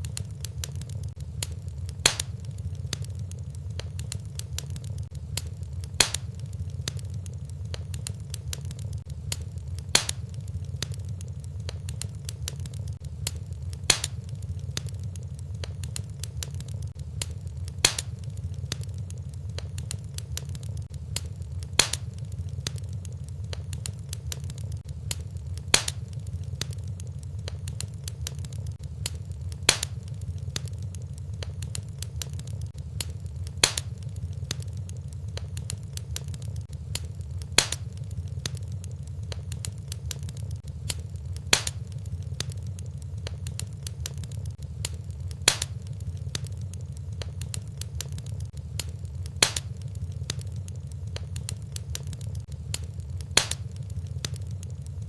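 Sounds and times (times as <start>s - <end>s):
fire popping: 0.0s - 55.0s
steady low rumble: 0.0s - 55.0s
wood fire crackling: 0.0s - 55.0s.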